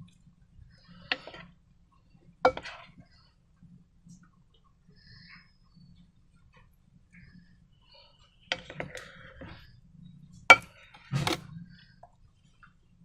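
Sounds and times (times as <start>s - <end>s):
clattering knock: 10.5s - 11.5s.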